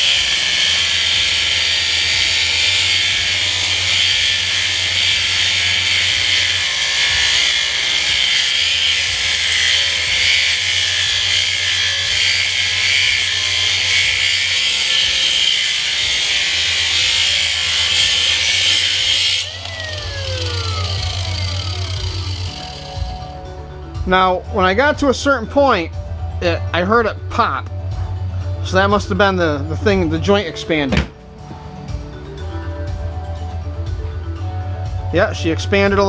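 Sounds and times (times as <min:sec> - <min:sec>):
electric power tool running: 0:00.0 - 0:23.6.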